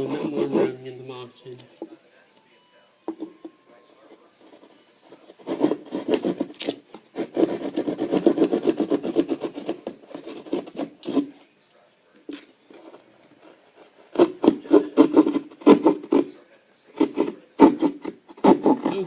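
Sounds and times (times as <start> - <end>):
hand saw rasping through drywall: 0.0 - 0.8, 5.2 - 11.3, 14.0 - 16.3, 17.0 - 19.0.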